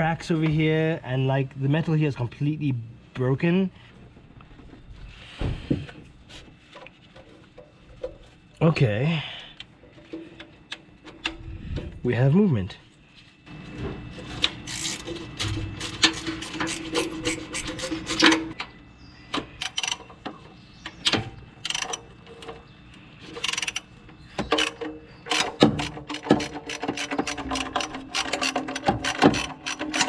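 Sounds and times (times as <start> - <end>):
metal scraping: 14.2 - 18.6
ratchet wrench clicking: 14.7 - 18.3, 19.6 - 20.0, 21.6 - 22.0, 23.4 - 23.9, 24.5 - 30.0.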